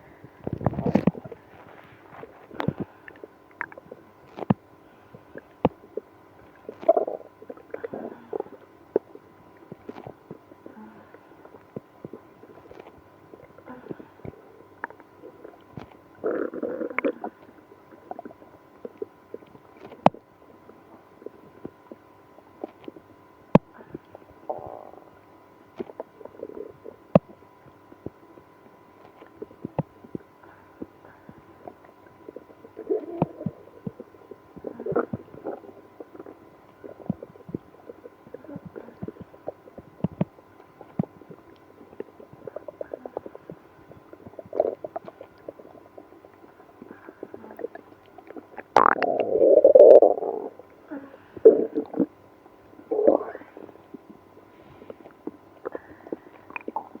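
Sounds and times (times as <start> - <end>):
stomach gurgling: 0.0 - 57.0.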